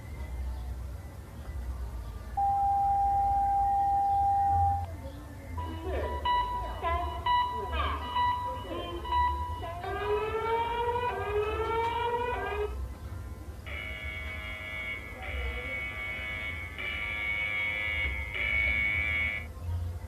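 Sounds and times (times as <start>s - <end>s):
harsh buzzing alarm tone: 13.6s - 19.5s.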